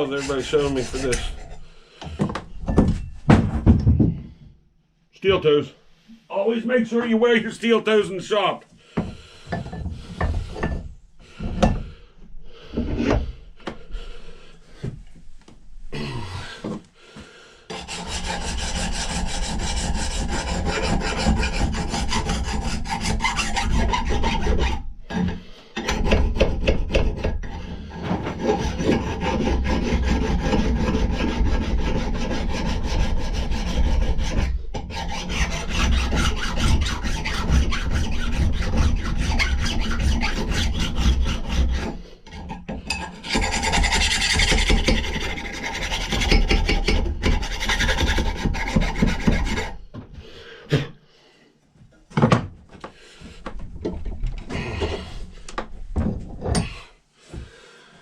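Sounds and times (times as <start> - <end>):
file rasping on metal: 0.0 - 1.7, 17.7 - 49.8
knocks and handling: 2.0 - 4.6, 51.8 - 57.5.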